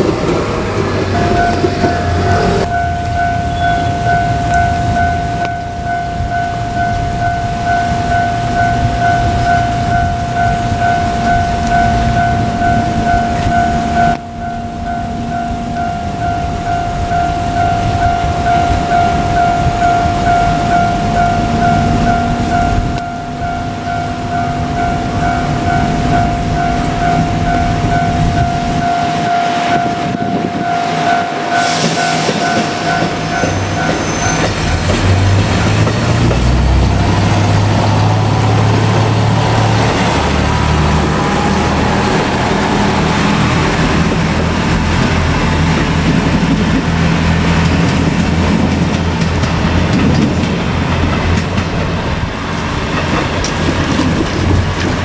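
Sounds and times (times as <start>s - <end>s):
level crossing bell ringing: 0.0s - 44.7s
diesel railcar engine: 0.0s - 55.0s
train wheels rumbling on rails: 0.0s - 55.0s.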